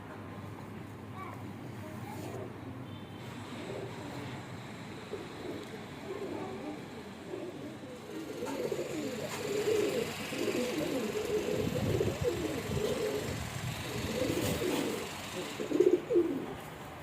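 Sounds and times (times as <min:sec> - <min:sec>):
pigeons cooing: 0:03.4 - 0:16.8.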